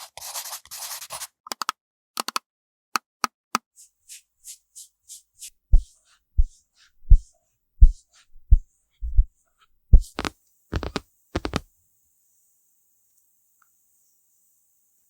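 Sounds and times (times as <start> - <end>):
deep soft thumps: 6.4 - 7.2, 7.8 - 9.3.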